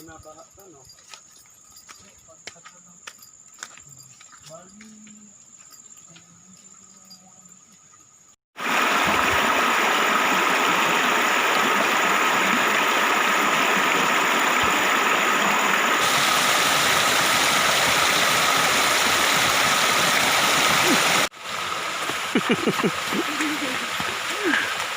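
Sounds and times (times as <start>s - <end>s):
stream rushing: 8.6s - 24.9s.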